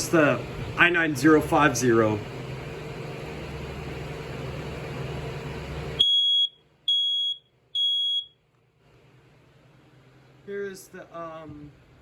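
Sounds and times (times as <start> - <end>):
steady background hum: 0.0 - 12.0
smoke alarm beeps: 6.0 - 8.4.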